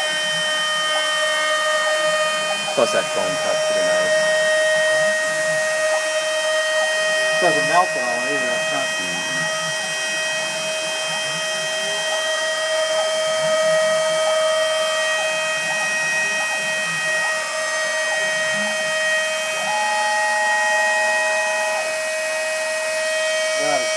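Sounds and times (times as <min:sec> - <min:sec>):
router spindle high whine: 0:00.0 - 0:23.9
higher tone: 0:02.6 - 0:06.4, 0:07.4 - 0:09.6.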